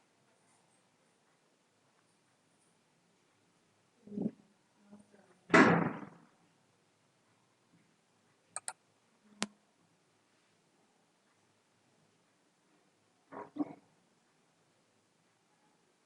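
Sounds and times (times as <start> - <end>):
loud thump: 5.5 - 6.2
computer mouse clicks: 8.5 - 8.8.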